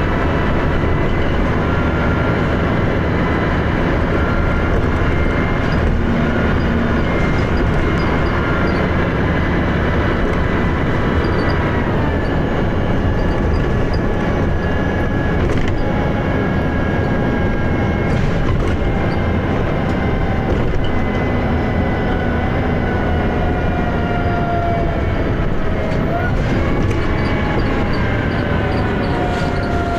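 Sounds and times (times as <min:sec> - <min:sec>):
bus engine running hard: 0:00.0 - 0:29.9
drivetrain whine: 0:00.0 - 0:29.9.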